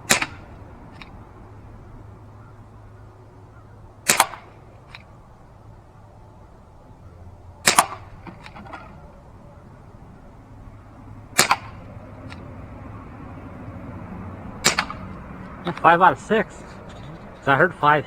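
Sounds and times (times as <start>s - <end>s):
pellets striking plastic targets: 0.0s - 1.9s, 4.0s - 5.4s, 7.6s - 16.9s
air pistol shots popping: 0.0s - 17.3s.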